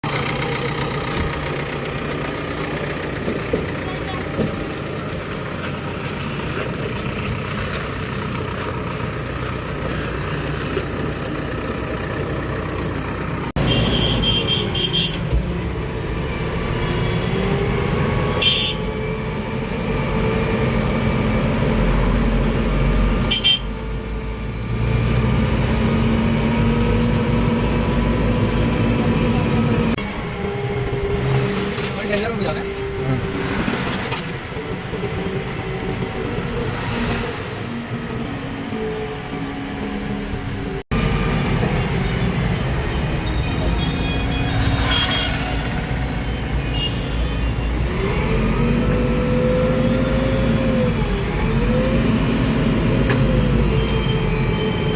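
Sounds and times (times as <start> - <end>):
diesel engines running: 0.0 - 54.9
high-pitched horn toots: 13.6 - 15.2, 18.4 - 18.9, 23.2 - 23.8.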